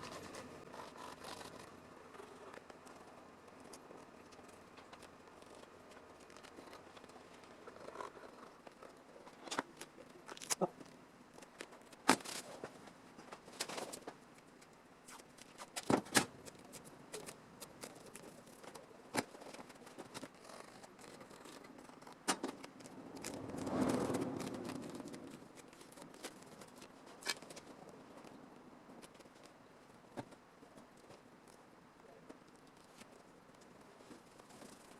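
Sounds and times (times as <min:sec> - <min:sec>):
scraping rush: 0:22.8 - 0:26.4.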